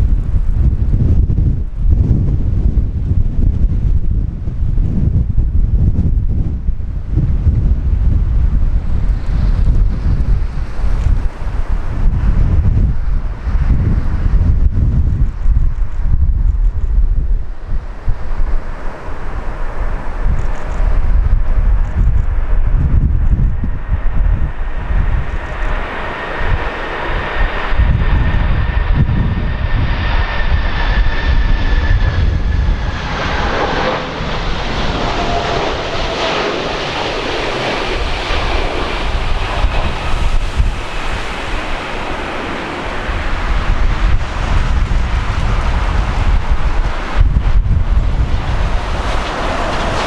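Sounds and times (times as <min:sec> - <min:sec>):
wind buffeting microphone: 0:00.0 - 0:50.0
jet engine whine passing: 0:17.4 - 0:50.0.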